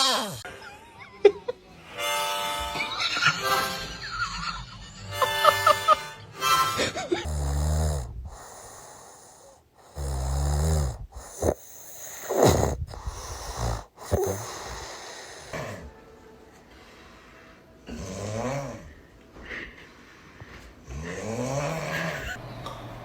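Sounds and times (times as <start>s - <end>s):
snoring: 7.2s - 16.0s, 17.9s - 19.0s, 20.8s - 22.4s.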